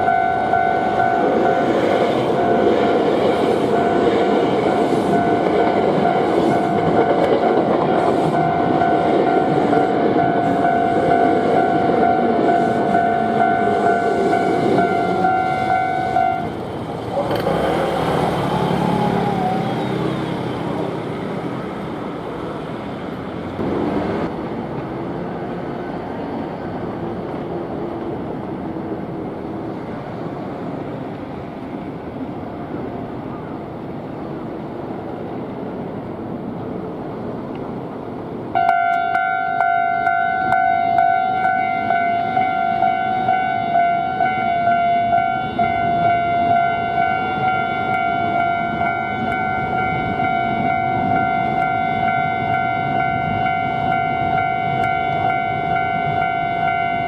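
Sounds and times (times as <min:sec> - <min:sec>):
level crossing warning bell: 0:00.0 - 0:16.6, 0:38.6 - 0:57.0
road traffic passing: 0:00.0 - 0:57.0.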